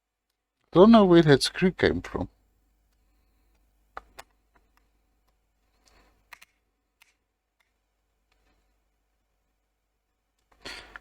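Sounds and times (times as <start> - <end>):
faint sharp plastic clicks: 2.9 - 8.6.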